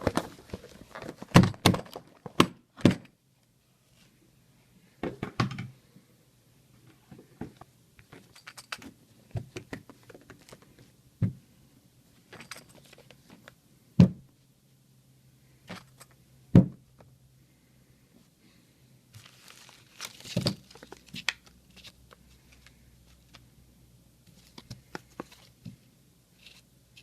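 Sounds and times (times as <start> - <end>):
items clicking and knocking: 0.0 - 3.1, 7.1 - 11.4, 12.3 - 14.2, 15.7 - 17.1, 20.0 - 23.4.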